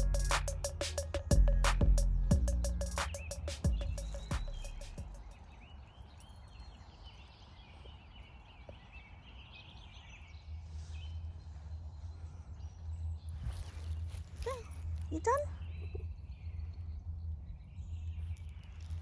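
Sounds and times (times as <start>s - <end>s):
distant birds chirping: 0.0s - 14.6s
low rumble of wind: 0.0s - 19.0s.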